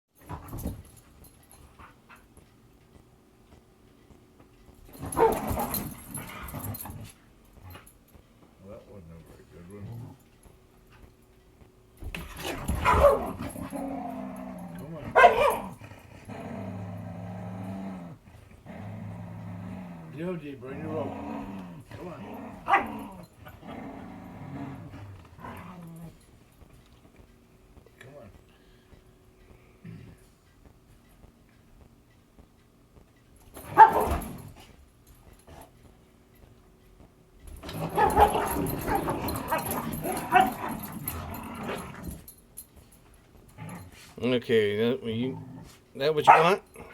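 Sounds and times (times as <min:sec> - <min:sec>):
dog barking: 0:05.1 - 0:05.5, 0:12.8 - 0:13.4, 0:15.2 - 0:15.8, 0:22.7 - 0:22.9, 0:33.7 - 0:34.2, 0:37.9 - 0:39.0, 0:40.3 - 0:40.6, 0:46.2 - 0:46.6
dog growling: 0:09.1 - 0:10.4, 0:12.3 - 0:26.3, 0:37.6 - 0:42.4, 0:43.5 - 0:44.2, 0:45.1 - 0:46.9.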